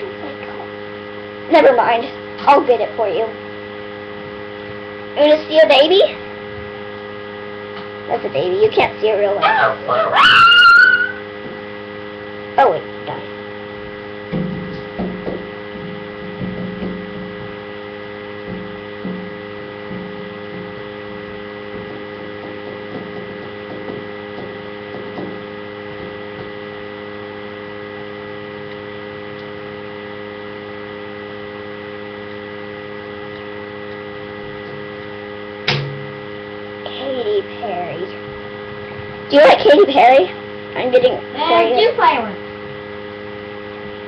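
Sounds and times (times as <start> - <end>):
steady electrical hum: 0.0 - 44.0
faint low bumps: 13.1 - 29.8
sharp click: 35.6 - 36.0.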